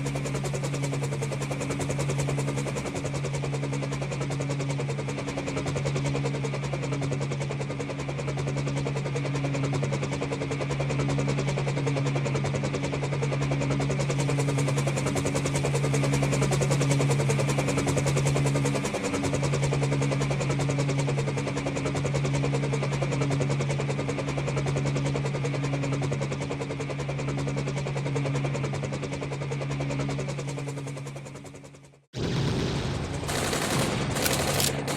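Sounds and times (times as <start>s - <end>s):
helicopter rotor chopping: 33.2s - 34.9s.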